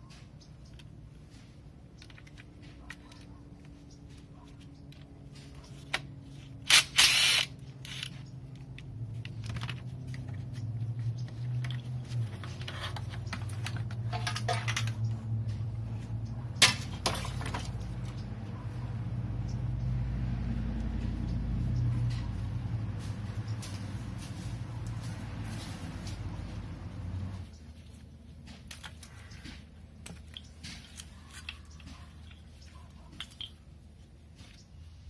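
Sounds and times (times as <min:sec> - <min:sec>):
low motor hum: 0:07.6 - 0:27.7
metal tool clicks and clanks: 0:12.5 - 0:15.7.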